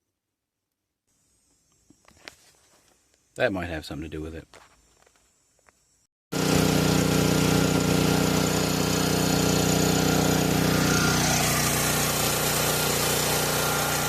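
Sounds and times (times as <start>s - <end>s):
portable generator engine running: 6.4s - 14.0s.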